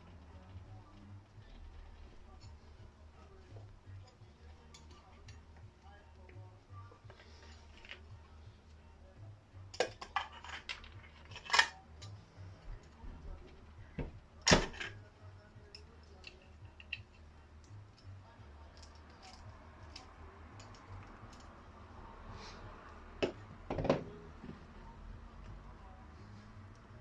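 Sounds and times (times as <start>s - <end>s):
metal parts clinking and knocking: 9.7s - 12.2s.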